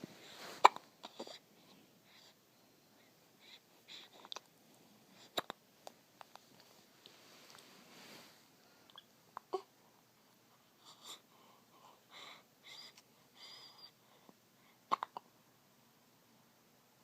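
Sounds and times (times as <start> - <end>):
baby breathing softly: 0.1 - 5.5, 10.5 - 14.9
baby hiccuping: 0.6 - 1.4, 5.2 - 5.6, 14.9 - 15.3.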